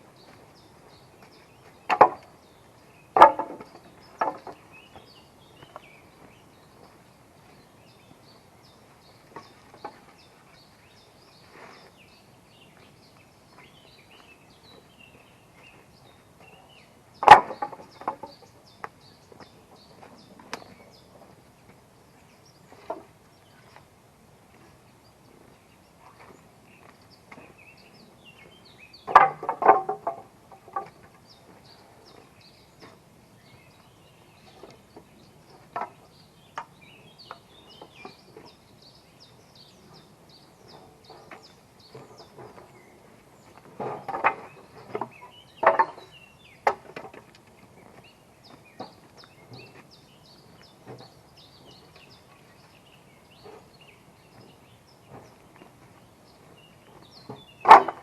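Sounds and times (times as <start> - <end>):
small birds chirping: 0.0 - 58.0
building materials clattering: 3.2 - 4.6, 29.1 - 31.1, 43.6 - 46.1.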